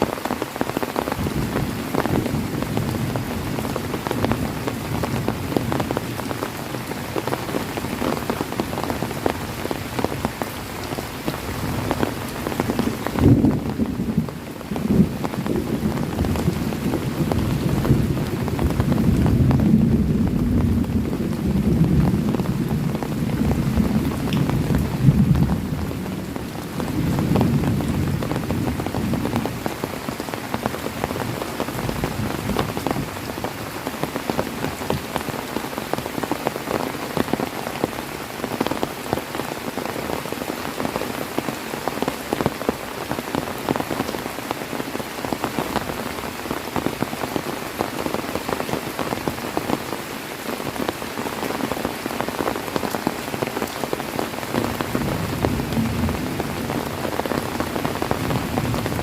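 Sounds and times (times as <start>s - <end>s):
heavy rain falling: 0.0s - 59.0s
raindrops ticking on a surface: 0.0s - 59.0s
low thunder rumble: 12.8s - 29.5s, 54.7s - 59.0s.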